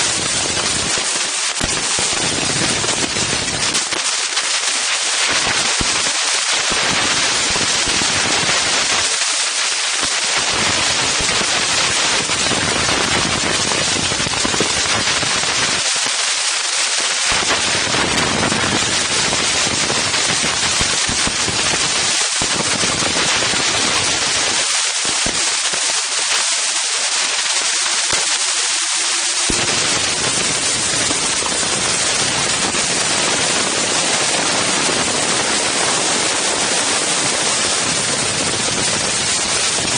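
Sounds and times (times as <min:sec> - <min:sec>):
wind buffeting microphone: 0:00.0 - 0:03.8, 0:10.4 - 0:15.8, 0:17.3 - 0:24.6, 0:29.5 - 0:39.9.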